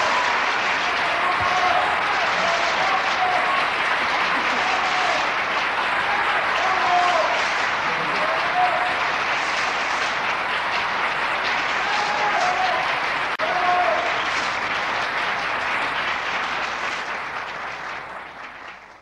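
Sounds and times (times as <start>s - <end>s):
people shouting: 0.0s - 9.0s, 11.8s - 14.2s
audience applauding: 0.0s - 19.0s.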